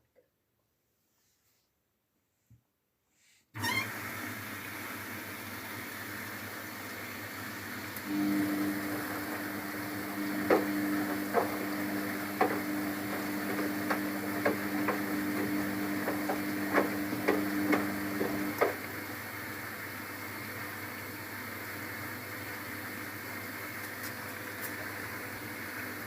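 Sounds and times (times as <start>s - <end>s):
washing machine motor humming: 3.6s - 26.0s
laundry knocking in drum: 9.0s - 18.8s.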